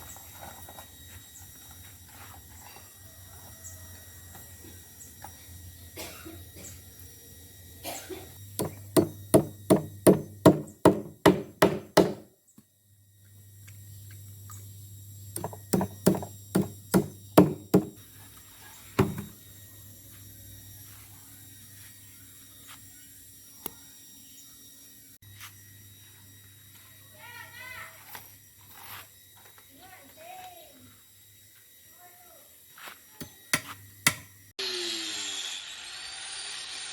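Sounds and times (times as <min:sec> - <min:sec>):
hammer striking wood: 0:08.6 - 0:12.3, 0:15.4 - 0:18.0, 0:19.0 - 0:19.3, 0:33.6 - 0:34.3.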